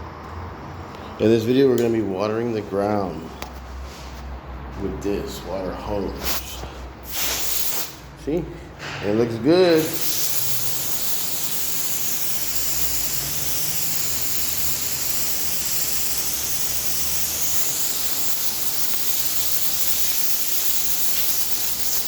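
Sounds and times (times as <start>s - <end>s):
pressure washer spraying water: 6.2s - 8.1s, 9.7s - 22.0s.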